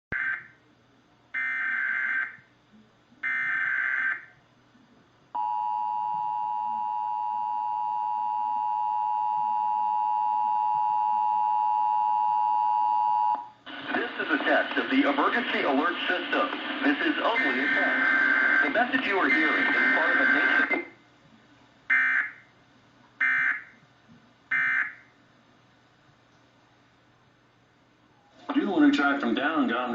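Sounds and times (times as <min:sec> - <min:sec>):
raspy data tone bursts: 0:17.1 - 0:20.7.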